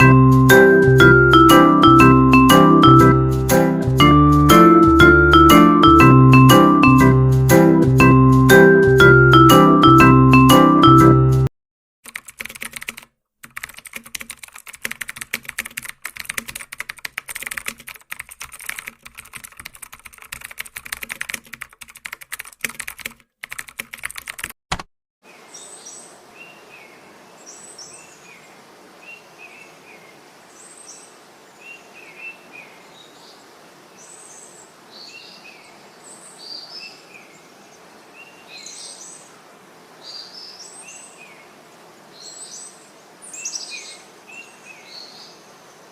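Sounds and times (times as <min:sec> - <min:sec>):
typing on keyboard: 0:12.0 - 0:24.9
birds chirping: 0:40.0 - 0:45.9.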